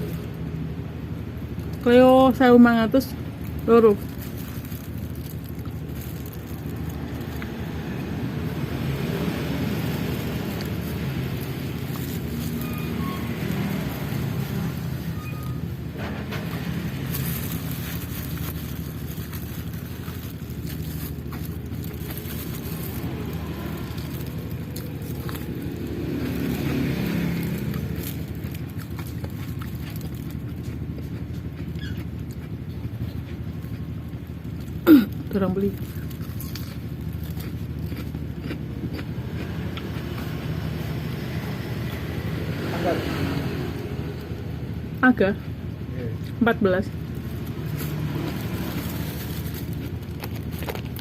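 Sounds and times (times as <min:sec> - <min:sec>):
road traffic rumble: 0:00.0 - 0:51.0.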